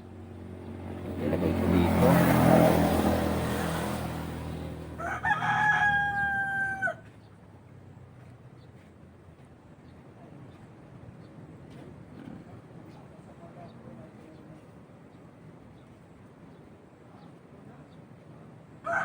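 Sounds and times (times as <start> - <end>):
motor vehicle passing: 0.0 - 8.3
rooster crowing: 4.9 - 7.1.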